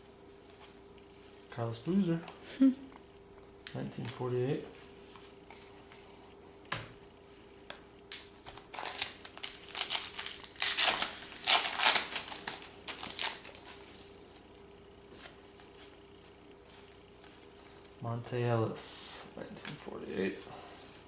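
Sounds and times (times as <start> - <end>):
cards rustling and crinkling: 8.1 - 16.0.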